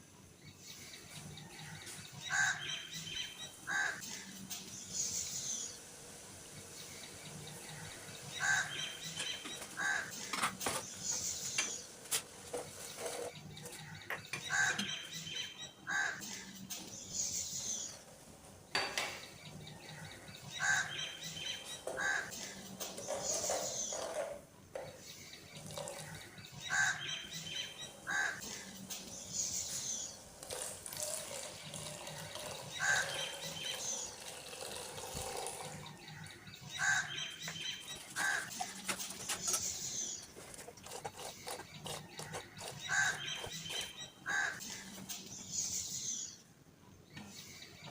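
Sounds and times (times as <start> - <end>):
bird calls: 6.8 - 18.1, 18.8 - 30.7, 31.4 - 46.5
running water: 30.2 - 36.1.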